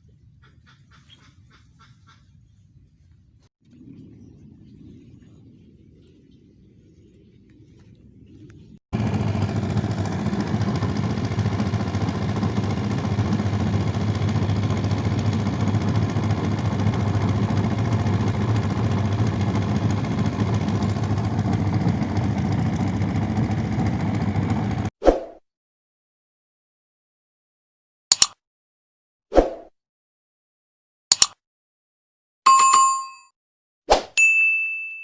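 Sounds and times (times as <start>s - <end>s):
engine idling: 9.0s - 24.9s.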